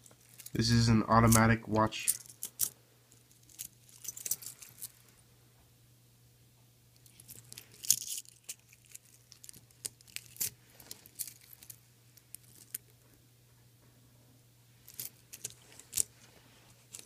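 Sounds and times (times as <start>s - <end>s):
faint low hum: 0.0s - 17.0s
watch bracelet links clinking: 2.1s - 5.0s.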